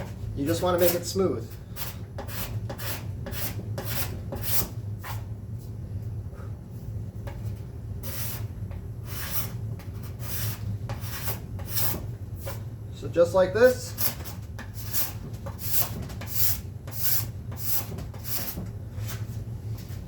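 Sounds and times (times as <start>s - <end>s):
steel scraper scraping wood: 1.7s - 5.2s, 8.0s - 12.6s, 14.0s - 18.7s.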